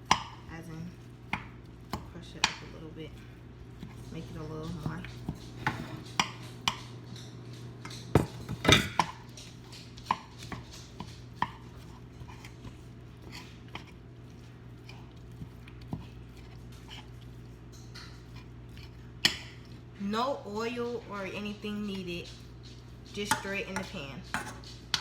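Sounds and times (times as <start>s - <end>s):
utensil knocking against bowl: 8.2s - 9.1s.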